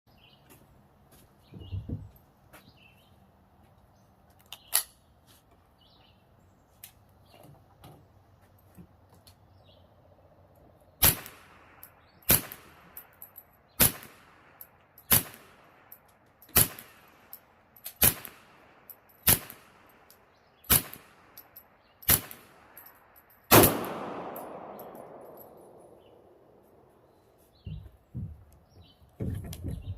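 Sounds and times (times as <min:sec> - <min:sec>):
rifle shots: 0:11.0 - 0:11.7, 0:12.3 - 0:12.8, 0:13.8 - 0:14.4, 0:15.1 - 0:15.7, 0:16.5 - 0:17.1, 0:17.9 - 0:18.6, 0:19.2 - 0:19.9, 0:20.7 - 0:21.2, 0:22.1 - 0:22.6, 0:23.5 - 0:26.5.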